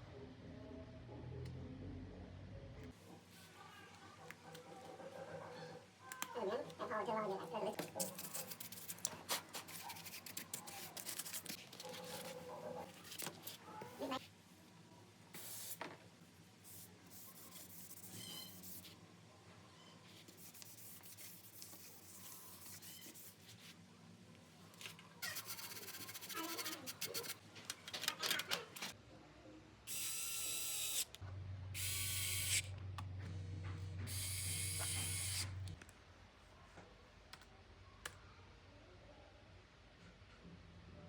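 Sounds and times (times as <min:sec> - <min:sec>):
small electric tool motor: 0:25.2 - 0:27.3, 0:29.9 - 0:31.2, 0:31.8 - 0:32.7, 0:34.1 - 0:35.6.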